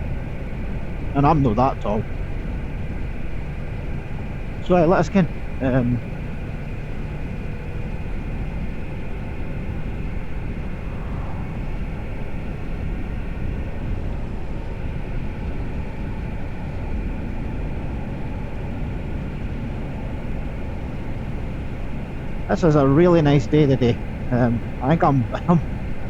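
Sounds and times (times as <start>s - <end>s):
motorcycle engine drone: 0.0s - 26.0s
wind rush: 9.5s - 15.1s.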